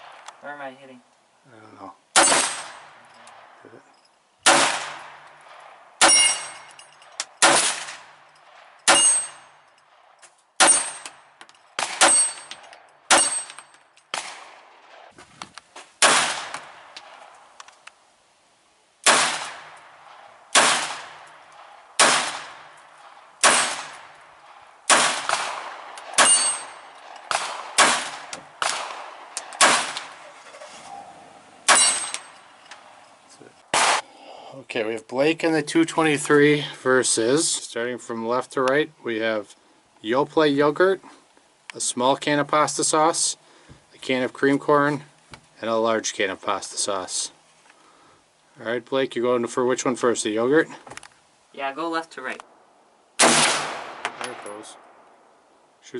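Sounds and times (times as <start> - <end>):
gunshots: 2.1 - 3.5, 4.4 - 6.7, 7.4 - 9.4, 10.6 - 11.2, 11.8 - 15.1, 16.0 - 17.2, 19.0 - 22.7, 23.4 - 30.3, 31.6 - 32.4, 33.7 - 34.1, 53.2 - 54.9
steel gong targets clanging: 26.2 - 26.8.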